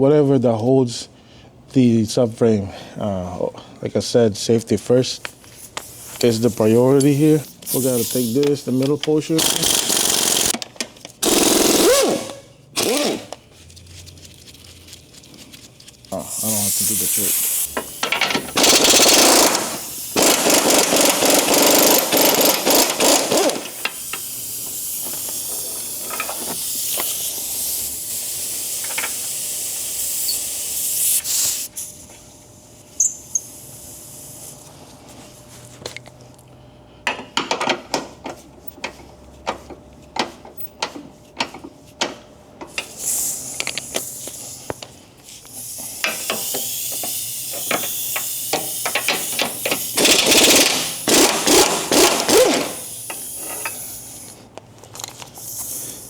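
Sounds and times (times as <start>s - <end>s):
hiss: 5.6s - 8.5s, 16.2s - 32.1s, 33.0s - 34.7s, 42.7s - 54.5s, 55.4s - 56.0s
impact wrench hammering: 6.2s - 13.4s, 17.6s - 25.3s, 46.0s - 53.8s.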